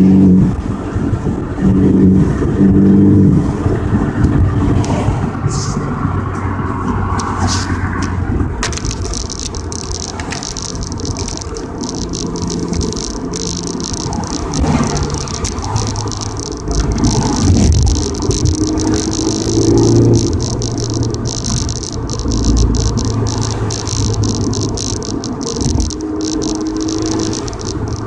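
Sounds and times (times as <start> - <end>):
car engine under full throttle: 0.0 - 28.0
road noise: 0.0 - 28.0
steady hiss: 8.8 - 28.0.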